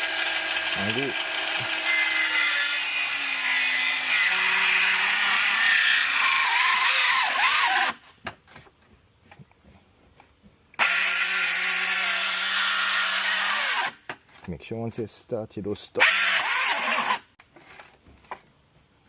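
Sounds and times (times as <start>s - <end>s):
circular saw cutting wood: 0.0s - 8.0s, 10.8s - 14.5s, 16.0s - 17.4s.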